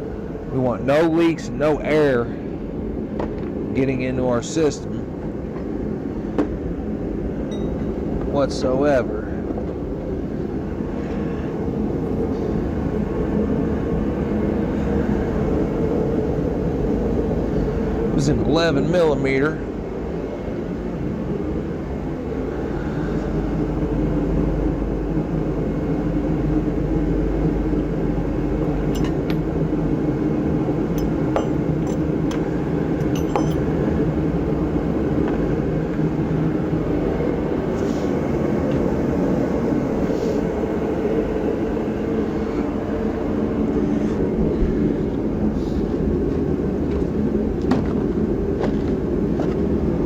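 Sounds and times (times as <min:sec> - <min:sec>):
low mechanical drone: 0:00.0 - 0:50.0
metal tool clinks: 0:28.8 - 0:29.5, 0:31.0 - 0:33.8.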